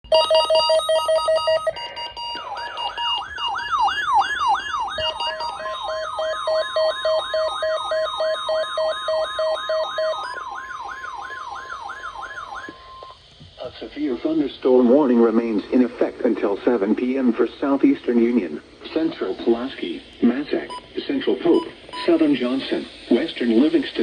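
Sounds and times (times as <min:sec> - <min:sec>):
electronic beeping: 0:00.0 - 0:13.2, 0:20.6 - 0:23.3
steady high alert tone: 0:00.0 - 0:13.2
fast siren-like wail: 0:00.4 - 0:13.2.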